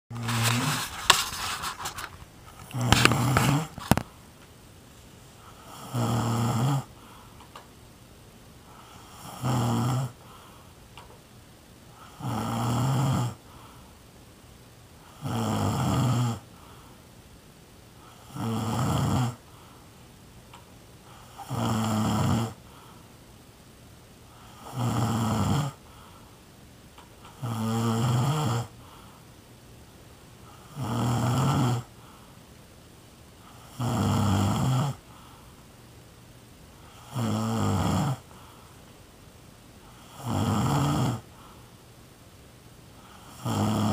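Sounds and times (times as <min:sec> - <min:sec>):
person snoring: 0:00.1 - 0:01.9, 0:02.6 - 0:04.0, 0:05.5 - 0:07.0, 0:08.7 - 0:10.3, 0:12.0 - 0:13.4, 0:15.1 - 0:16.4, 0:18.1 - 0:19.4, 0:21.2 - 0:22.6, 0:24.4 - 0:25.8, 0:27.4 - 0:28.7, 0:30.5 - 0:31.9, 0:33.5 - 0:35.0, 0:36.9 - 0:38.4, 0:39.9 - 0:41.5, 0:43.0 - 0:43.9.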